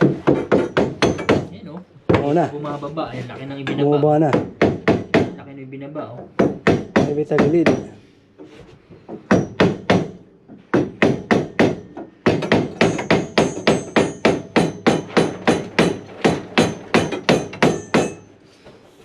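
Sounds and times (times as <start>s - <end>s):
hammer knocking on wood: 0.0s - 1.5s, 2.1s - 2.5s, 4.2s - 5.4s, 6.1s - 8.0s, 8.9s - 18.2s.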